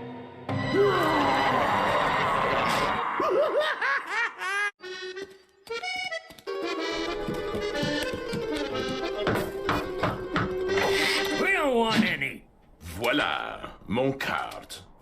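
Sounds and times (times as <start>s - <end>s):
accordion music: 4.8s - 11.5s.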